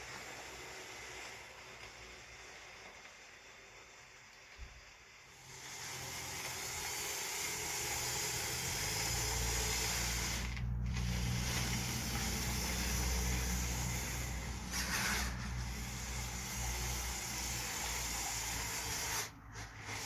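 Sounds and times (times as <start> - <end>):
steady hiss: 0.0 - 20.0
low motor hum: 5.6 - 20.0.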